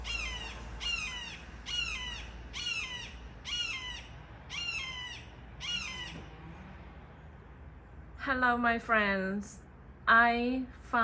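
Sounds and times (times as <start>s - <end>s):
bird calling loudly: 0.0s - 6.3s.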